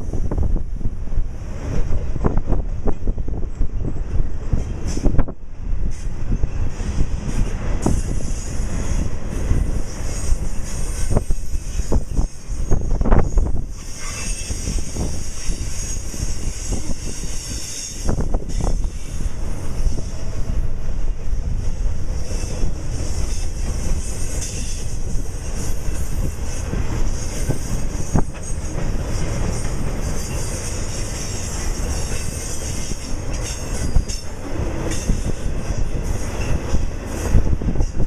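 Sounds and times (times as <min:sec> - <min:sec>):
train wheels rumbling on rail: 0:00.0 - 0:38.0
wheel squeal: 0:09.7 - 0:19.3, 0:22.2 - 0:34.3
wheels clicking over rail joints: 0:22.2 - 0:38.0.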